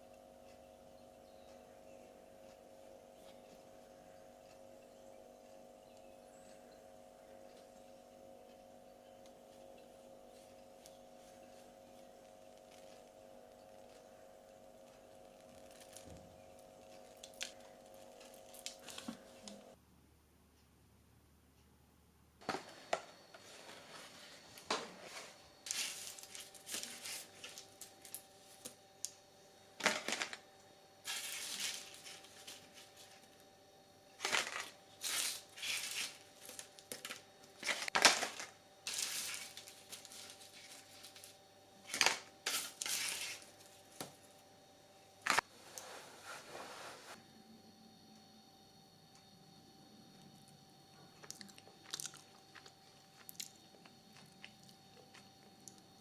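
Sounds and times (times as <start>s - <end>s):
faint steady hum: 0.0s - 56.0s
scraping and rustling of ingredients: 9.5s - 19.8s, 22.4s - 28.8s, 29.8s - 33.4s, 34.2s - 44.2s, 45.2s - 47.2s.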